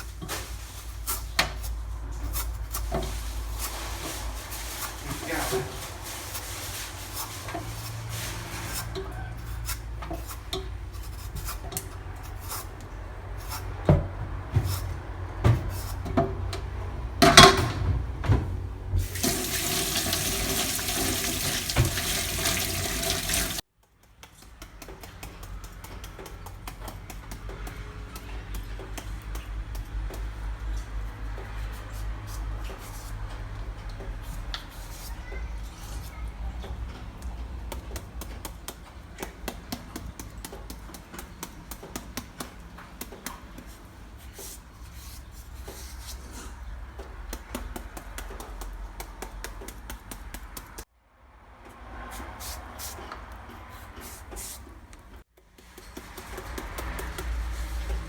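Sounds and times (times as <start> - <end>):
tap running into a sink: 19.0 - 23.6.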